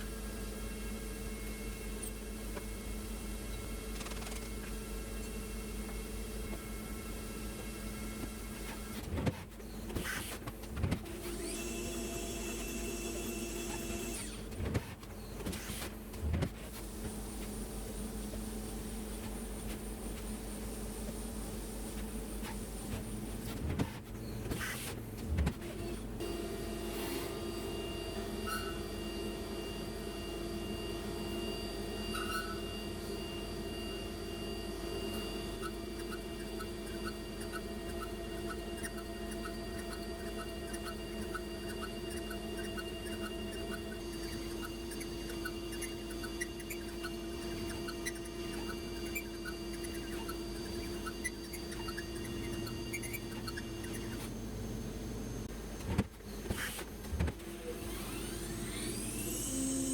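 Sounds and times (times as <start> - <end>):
milling machine humming: 0.0 - 59.9
motor whine: 0.0 - 59.9
milling machine cutting metal: 11.0 - 14.5, 56.3 - 59.9.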